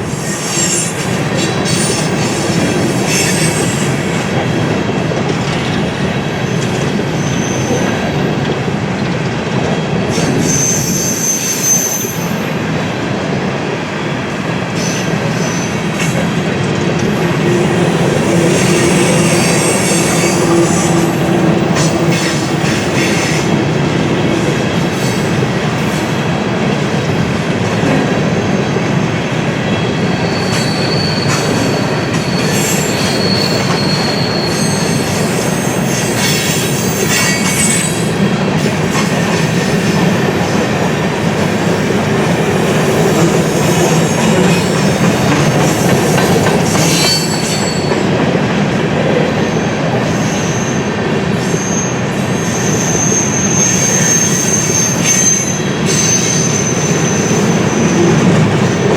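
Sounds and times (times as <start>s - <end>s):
train wheels rumbling on rails: 0.0s - 58.9s
high-pitched wheel squeal: 10.2s - 12.4s, 18.2s - 21.2s, 30.2s - 38.1s, 46.1s - 48.1s, 50.1s - 58.1s.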